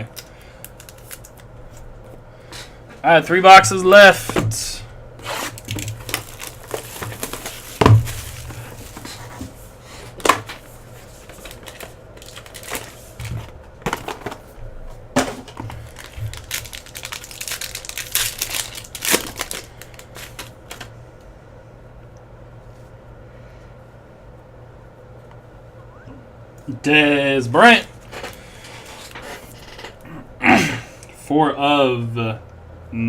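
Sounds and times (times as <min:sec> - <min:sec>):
plastic wrapper crinkling and tearing: 0:00.2 - 0:01.9, 0:05.2 - 0:09.2, 0:11.1 - 0:14.4, 0:15.5 - 0:20.9.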